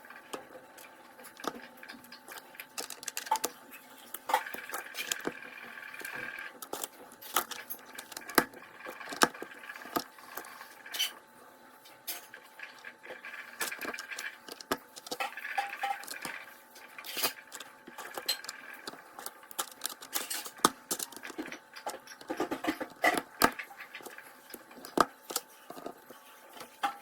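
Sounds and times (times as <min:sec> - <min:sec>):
plastic bricks clicking together: 0:01.3 - 0:03.6, 0:04.3 - 0:05.4, 0:13.5 - 0:16.4, 0:17.2 - 0:26.1.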